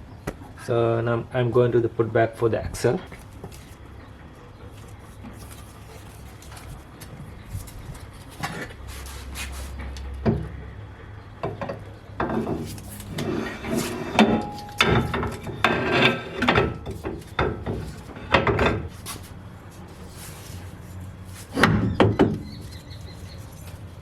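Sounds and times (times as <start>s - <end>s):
metal scraping and knocking: 11.4s - 22.8s.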